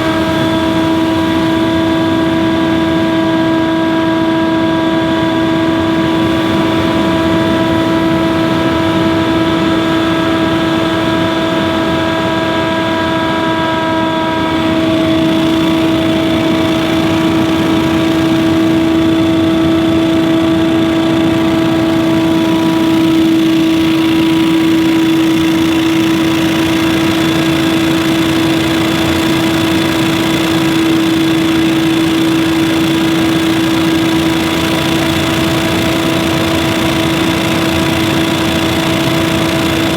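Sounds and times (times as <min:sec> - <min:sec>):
leaf blower engine running: 0:00.0 - 0:39.9.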